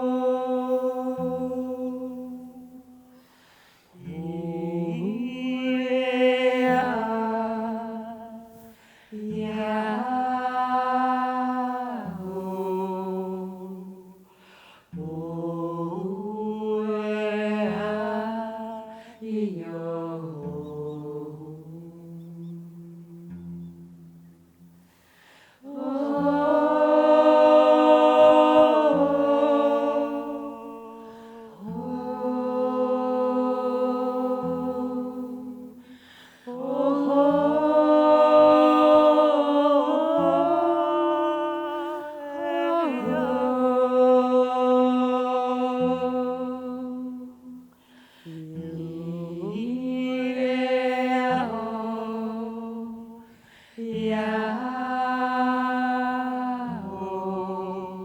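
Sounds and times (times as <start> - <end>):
vocal ensemble singing lullaby: 0.0 - 58.0
singers breathing: 3.0 - 4.0, 8.5 - 9.2, 14.2 - 15.0, 24.8 - 25.6, 31.0 - 31.4, 35.7 - 36.6, 47.7 - 48.4, 53.2 - 53.8
low held vocal tones: 3.8 - 58.0.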